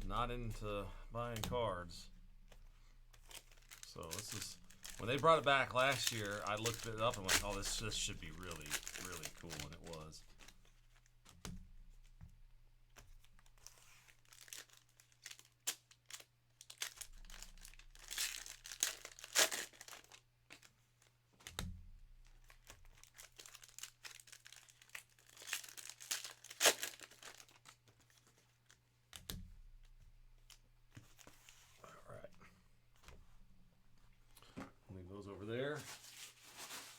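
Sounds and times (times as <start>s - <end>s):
faint electrical hum: 0.0s - 36.9s
wrappers being torn and crinkled: 2.5s - 11.1s, 13.3s - 21.6s, 22.2s - 29.2s.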